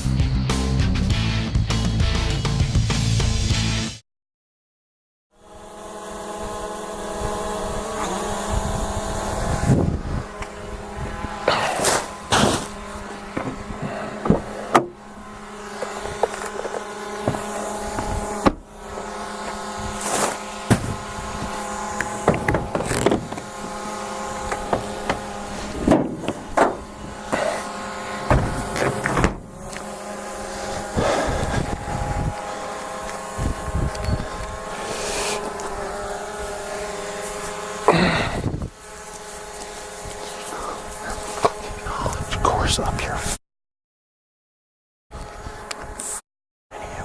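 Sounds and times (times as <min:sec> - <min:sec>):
engine running: 0:05.4 - 0:42.0
knocks and clunks: 0:28.2 - 0:29.5.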